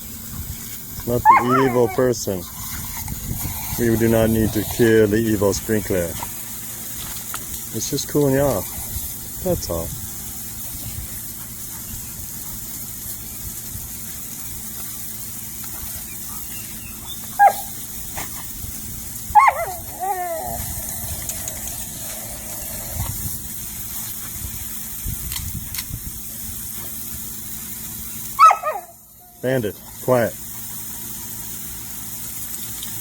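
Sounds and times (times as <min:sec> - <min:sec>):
sprinkler spray hissing: 0:00.0 - 0:33.0
puppy barking and yelping: 0:01.2 - 0:02.1, 0:16.5 - 0:17.8, 0:19.3 - 0:22.9, 0:28.4 - 0:29.0.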